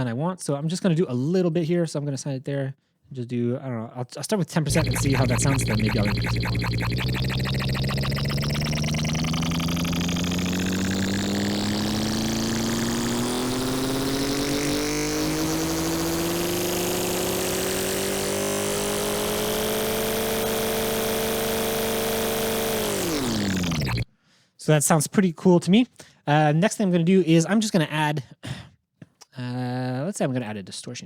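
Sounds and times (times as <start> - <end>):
synthesized spaceship engine hum: 4.7 - 24.1.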